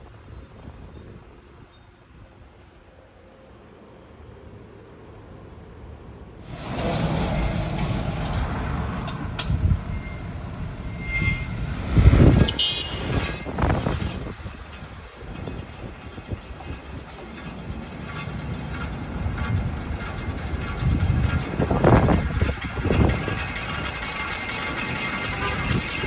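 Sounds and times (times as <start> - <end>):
low rumble of rolling car: 6.4 - 26.0
metallic wheel screech: 6.4 - 26.0.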